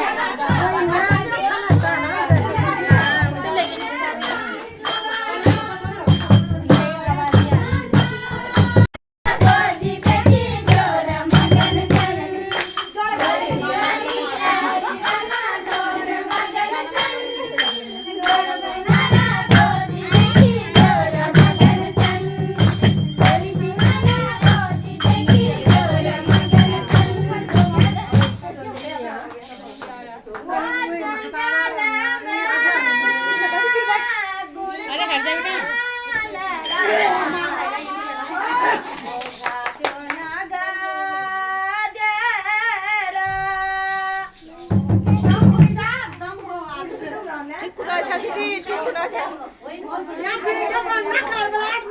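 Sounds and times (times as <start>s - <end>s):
jingling hand percussion: 0.0s - 32.3s, 36.6s - 40.2s, 42.9s - 46.7s
voices singing: 0.0s - 51.9s
low drum: 18.9s - 28.5s.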